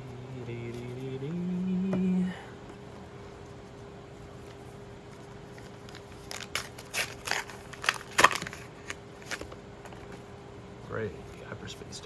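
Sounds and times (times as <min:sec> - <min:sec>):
foil wrapper crinkling and tearing: 0:05.8 - 0:09.4.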